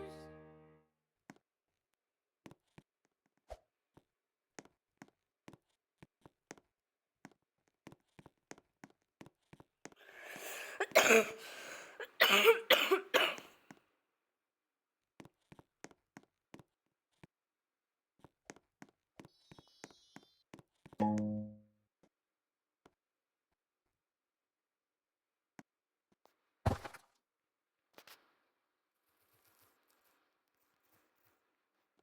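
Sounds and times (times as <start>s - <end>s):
person coughing hard: 10.4s - 13.5s.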